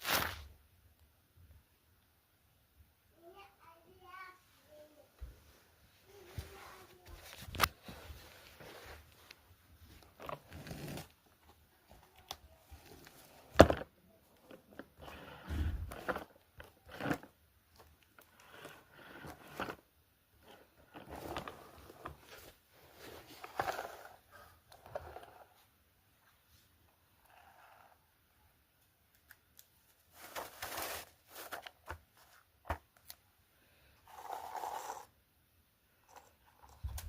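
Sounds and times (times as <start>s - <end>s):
material rustling and crinkling: 5.4s - 13.8s, 29.6s - 33.2s.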